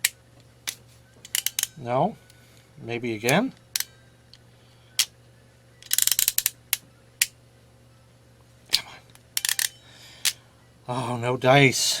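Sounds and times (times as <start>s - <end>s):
crimp tool ratchet clicks: 5.8s - 6.6s, 9.4s - 9.7s.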